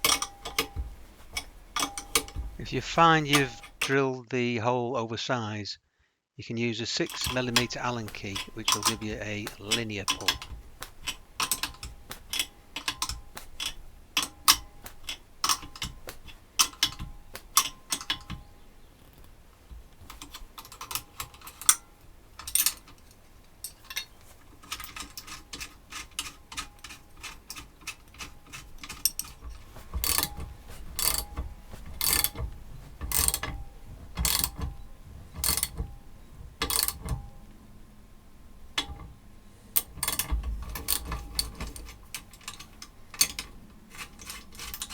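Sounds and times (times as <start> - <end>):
louder tool strokes: 0.0 - 4.0, 7.1 - 18.6, 23.8 - 37.2
rivnut tool metal clicks: 0.0 - 4.0, 7.1 - 44.9.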